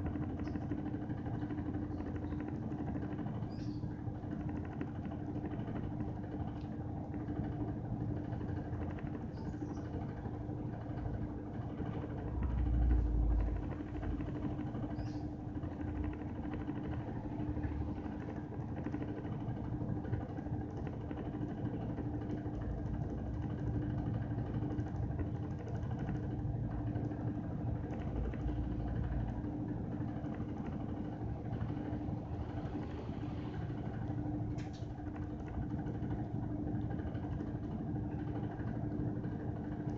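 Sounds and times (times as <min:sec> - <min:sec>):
washing machine running: 0:00.0 - 0:39.9.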